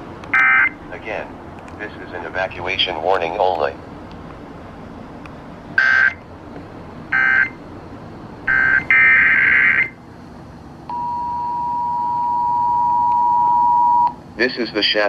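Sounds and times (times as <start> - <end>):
steady two-tone alert signal: 10.9 - 14.1.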